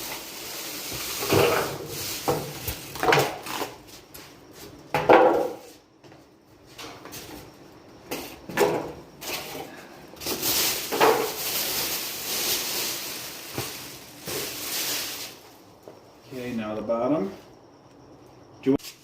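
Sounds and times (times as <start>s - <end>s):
packaging scraping and rustling: 10.2s - 15.5s.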